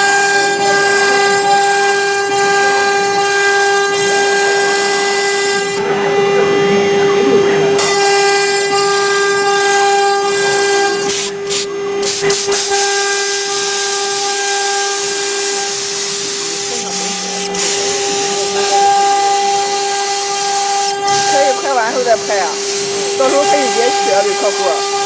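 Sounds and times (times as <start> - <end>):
hiss of bit cutting wood: 10.9 - 25.0
router spindle whining: 11.8 - 25.0.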